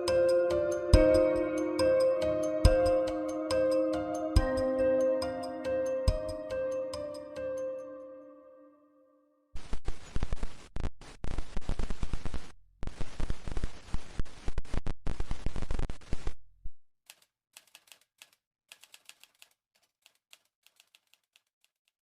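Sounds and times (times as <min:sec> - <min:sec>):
mechanical keyboard typing: 0:17.1 - 0:22.0.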